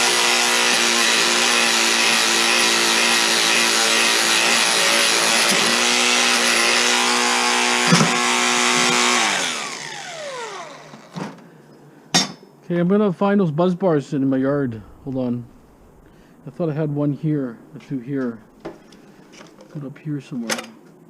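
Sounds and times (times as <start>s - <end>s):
power grinder running: 0.0s - 11.2s.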